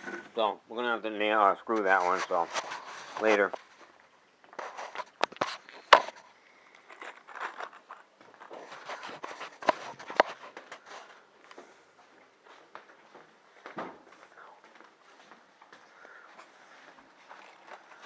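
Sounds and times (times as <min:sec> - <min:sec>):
footsteps: 0:01.7 - 0:03.9, 0:06.9 - 0:18.0
handling noises: 0:01.7 - 0:03.9, 0:04.5 - 0:11.7.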